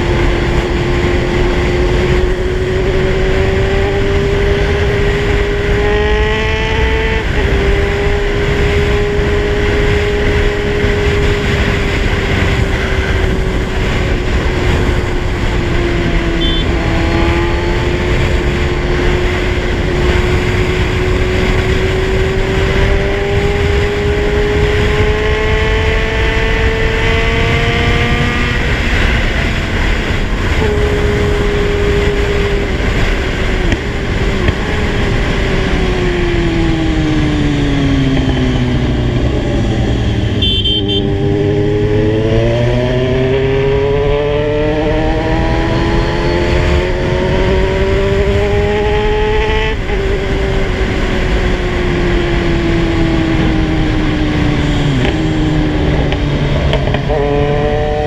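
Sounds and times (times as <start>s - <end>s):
motorcycle engine: 0.0s - 58.0s
wind rush: 0.0s - 58.0s
brief high beep: 16.4s - 16.7s, 40.4s - 41.2s.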